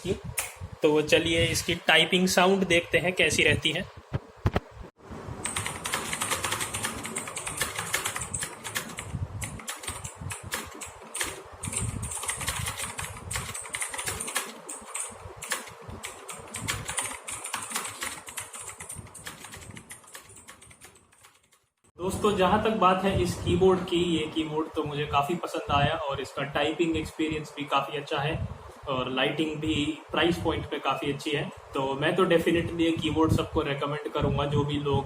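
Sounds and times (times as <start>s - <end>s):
mechanical keyboard typing clicks: 5.4s - 21.6s.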